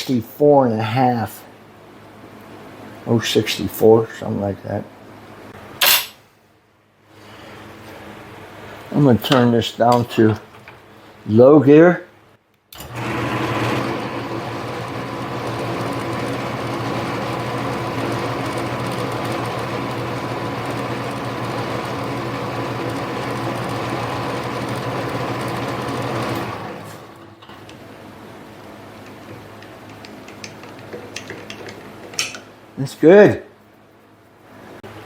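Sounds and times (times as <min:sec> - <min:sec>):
lathe motor and gear hum: 0:12.8 - 0:27.8.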